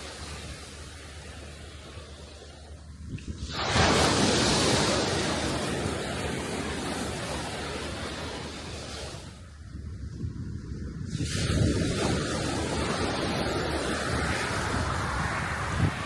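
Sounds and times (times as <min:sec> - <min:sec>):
water washing back: 0:00.0 - 0:09.6
wave crashing on shore: 0:00.0 - 0:16.0.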